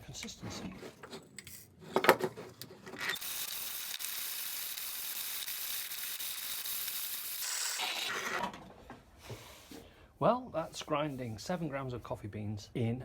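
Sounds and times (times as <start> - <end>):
hand coffee grinder grinding beans: 3.0 - 8.6.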